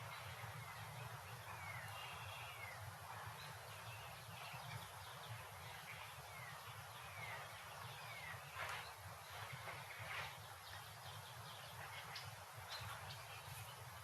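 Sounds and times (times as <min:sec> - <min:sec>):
birds chirping: 0:00.0 - 0:14.0.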